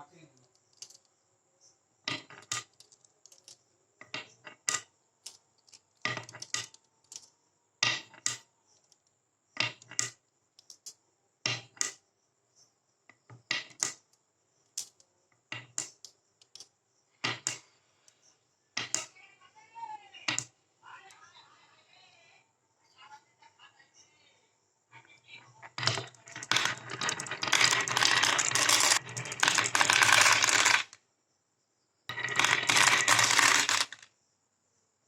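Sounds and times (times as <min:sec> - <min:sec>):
marbles clicking and clacking: 0:00.4 - 0:01.1, 0:02.1 - 0:09.0, 0:09.6 - 0:12.0, 0:13.5 - 0:14.1, 0:14.7 - 0:17.7, 0:18.8 - 0:19.1, 0:20.3 - 0:20.5, 0:25.6 - 0:31.0, 0:32.1 - 0:34.1.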